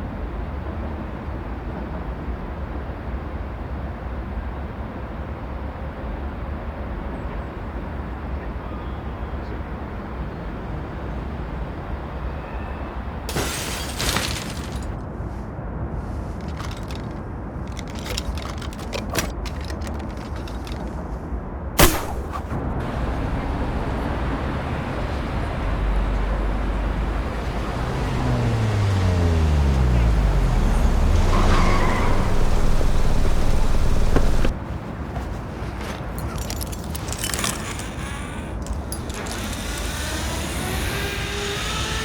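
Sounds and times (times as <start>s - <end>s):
low city rumble: 0.0s - 42.0s
glass breaking crash: 13.3s - 15.0s
sharp clicks and knocks: 16.4s - 20.9s
sharp bang: 21.8s - 26.9s.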